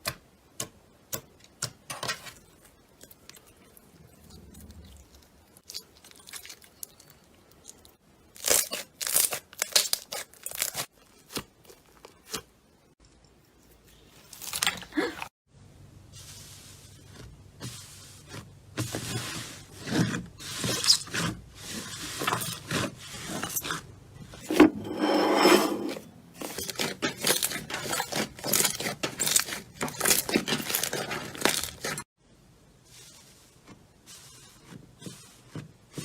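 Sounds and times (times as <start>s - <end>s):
slime squelch: 26.4s - 32.0s.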